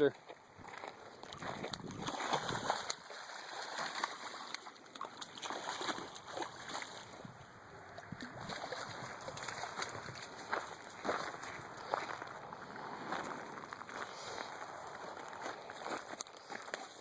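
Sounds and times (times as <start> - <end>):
fish splashing at water surface: 1.2 - 7.2, 7.9 - 12.1.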